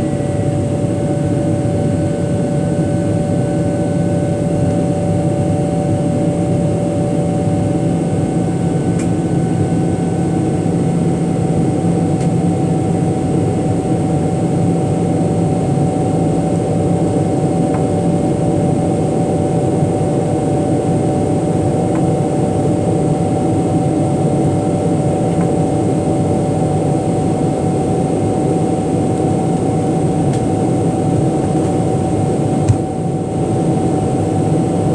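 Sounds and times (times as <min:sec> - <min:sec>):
airliner cabin engine drone: 0:00.0 - 0:34.9.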